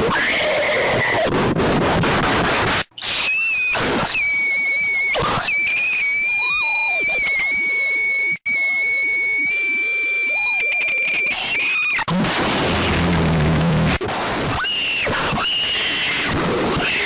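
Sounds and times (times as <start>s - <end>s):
loud noisy rush: 12.2s - 14.5s.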